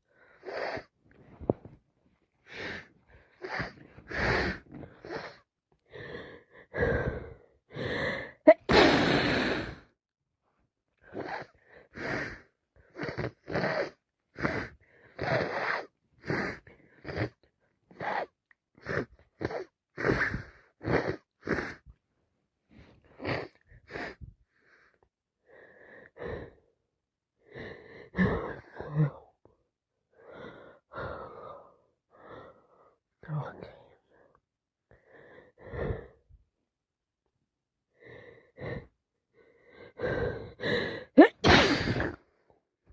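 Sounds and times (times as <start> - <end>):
gasping in-breaths: 2.4 - 9.9, 37.9 - 42.3
woman sneezing: 8.5 - 9.2, 41.2 - 42.2.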